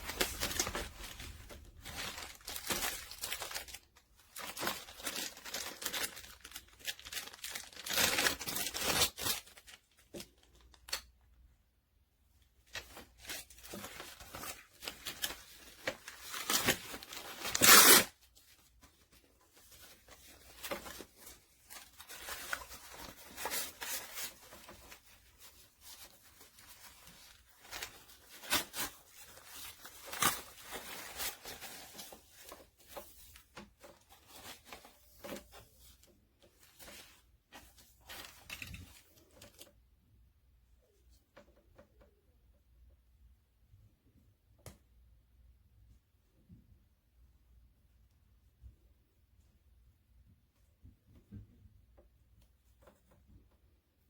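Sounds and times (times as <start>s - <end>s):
loud ripping: 16.2s - 18.2s.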